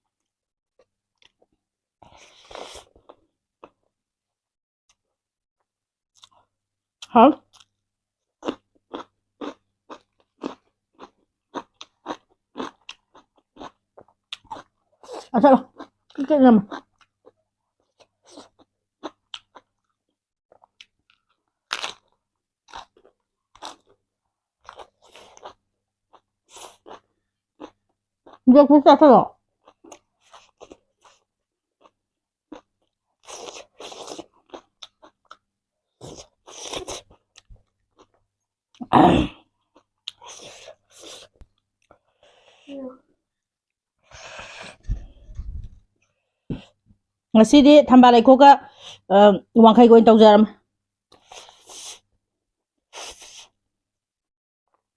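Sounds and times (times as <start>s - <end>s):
crunchy bites and chewing: 8.4s - 16.0s, 16.7s - 24.0s, 29.6s - 35.4s, 36.0s - 38.2s.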